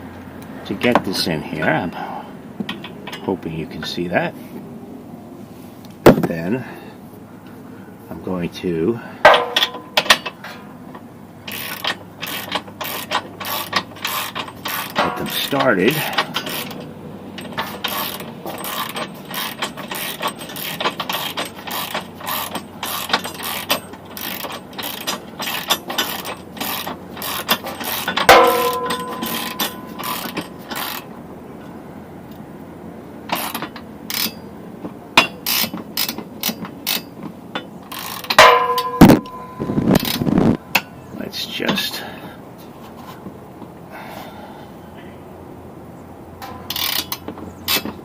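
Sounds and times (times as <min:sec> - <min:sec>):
metal clinking with a ring: 0:11.5 - 0:31.0, 0:37.9 - 0:41.0
ratchet wrench clicking: 0:11.5 - 0:31.1, 0:33.3 - 0:34.4, 0:35.2 - 0:40.9, 0:46.4 - 0:48.0.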